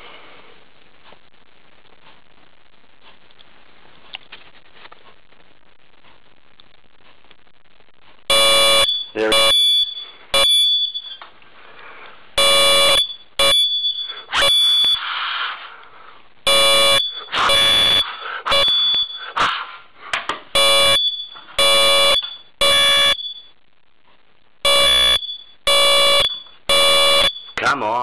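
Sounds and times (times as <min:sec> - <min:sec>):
smoke alarm beeping: 0:08.3 - 0:11.2, 0:12.4 - 0:15.1, 0:16.5 - 0:19.4, 0:20.6 - 0:23.6, 0:24.6 - 0:27.7.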